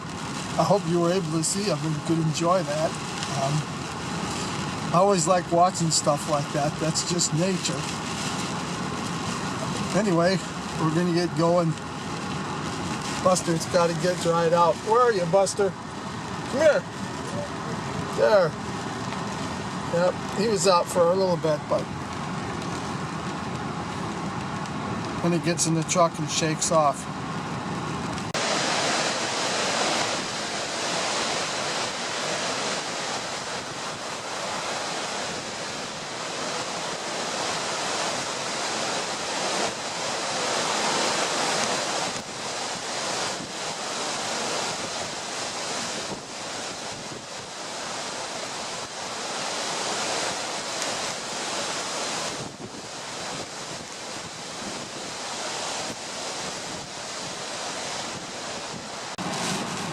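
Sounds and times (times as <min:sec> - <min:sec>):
lake waves crashing: 0:00.0 - 0:23.0, 0:25.1 - 0:27.1, 0:28.0 - 0:59.9
wind blowing on microphone: 0:26.6 - 0:59.9.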